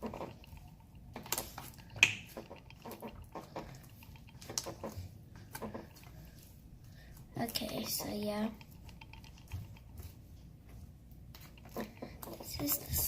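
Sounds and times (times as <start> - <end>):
slime squelching by hand: 0.0 - 13.0.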